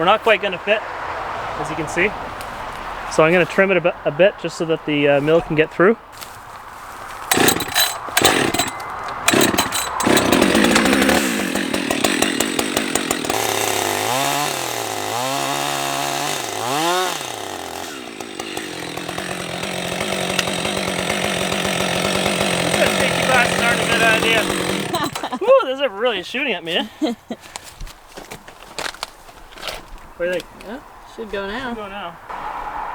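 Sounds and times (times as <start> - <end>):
chainsaw pull starting: 7.2 - 25.4
chainsaw revving and cutting log: 7.3 - 25.5.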